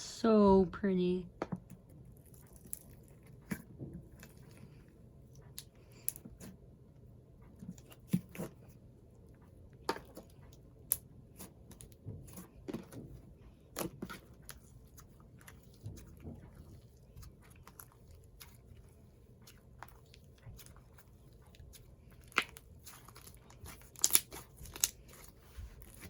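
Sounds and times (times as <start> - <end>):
slime kneaded by hand: 10.1 - 26.0.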